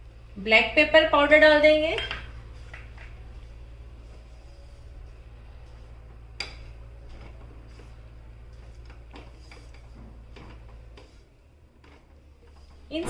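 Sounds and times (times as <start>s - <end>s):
spoon stirring powder in pan: 5.7s - 11.2s.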